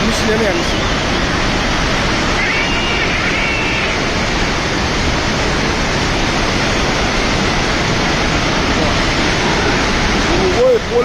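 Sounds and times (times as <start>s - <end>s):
floodwater rushing: 0.0s - 11.0s
faint voice calling out: 2.3s - 4.1s.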